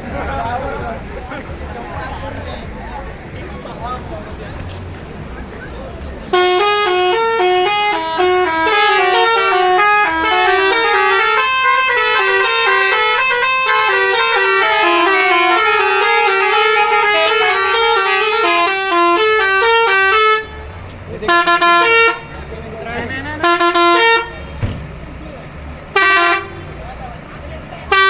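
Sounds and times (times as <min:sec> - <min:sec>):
multi-tone bus horn tune: 0:05.4 - 0:24.8, 0:25.9 - 0:28.0.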